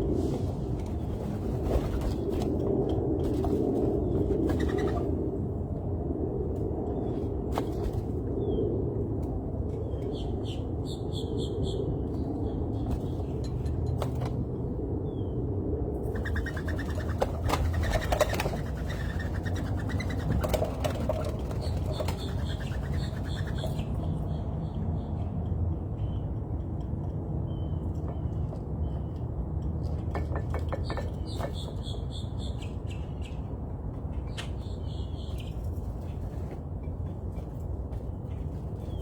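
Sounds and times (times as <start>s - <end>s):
small birds chirping: 9.8s - 13.3s, 16.2s - 25.4s, 30.7s - 36.2s.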